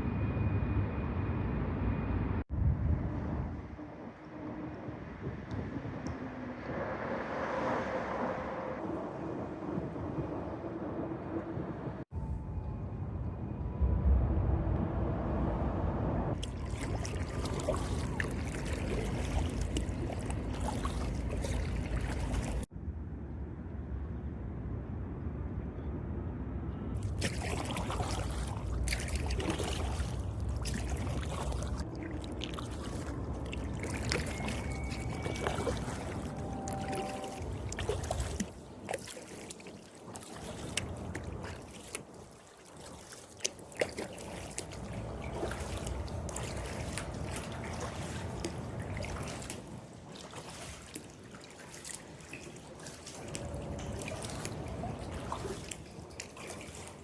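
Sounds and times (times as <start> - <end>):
wind rumble on microphone: 0.0 - 51.3, 52.7 - 57.0
paddle strokes splashing: 16.4 - 22.7, 27.0 - 57.0
water trickling off paddle: 16.4 - 22.7, 27.0 - 57.0.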